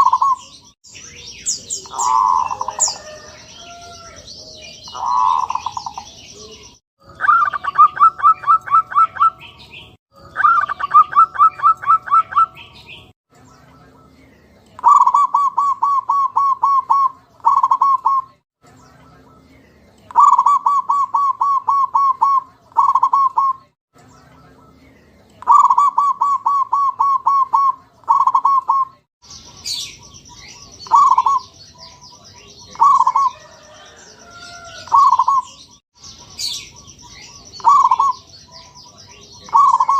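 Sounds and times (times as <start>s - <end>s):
doves cooing: 0.0s - 9.4s, 10.4s - 12.6s, 14.8s - 18.2s, 20.2s - 23.6s, 25.4s - 28.9s, 30.8s - 31.5s, 32.6s - 35.6s, 37.2s - 38.3s, 39.4s - 39.9s
small birds chirping: 0.0s - 39.9s.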